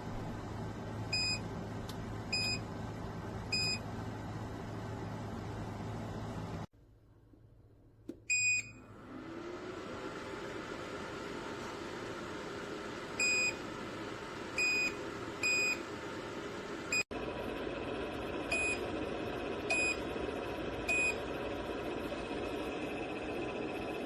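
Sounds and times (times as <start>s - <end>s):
heater control panel beeping: 1.1s - 1.4s, 2.3s - 2.7s, 3.5s - 3.8s, 8.3s - 8.9s, 13.2s - 13.7s, 14.6s - 15.9s, 18.4s - 19.0s, 19.6s - 20.1s, 20.8s - 21.4s.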